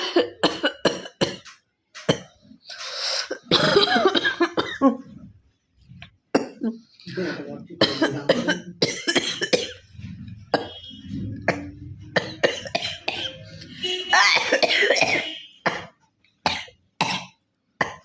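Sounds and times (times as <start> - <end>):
woman coughing and hawking: 0.0 - 1.5, 3.2 - 5.0, 7.8 - 9.8, 11.5 - 15.9.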